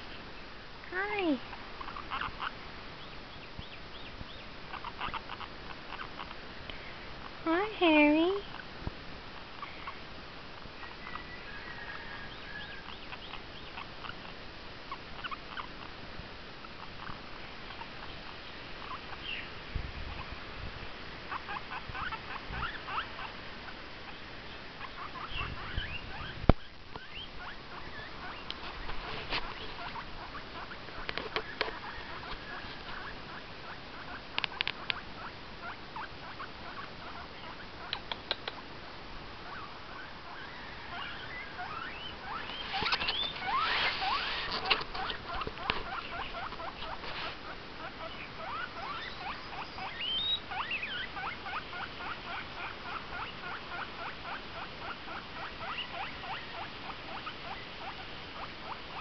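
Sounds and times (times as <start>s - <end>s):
guinea pig squeaking: 0.9s - 6.4s, 12.3s - 15.9s, 16.7s - 19.3s, 21.3s - 23.3s, 24.8s - 38.6s, 39.4s - 59.0s
sharp click: 37.9s - 38.6s.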